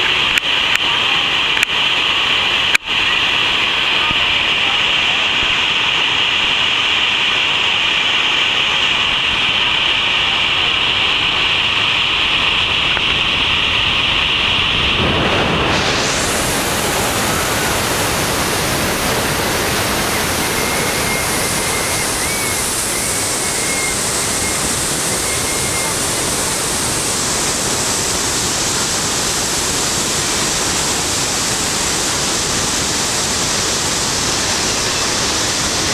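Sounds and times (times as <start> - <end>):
rush of falling water: 0.0 - 35.9.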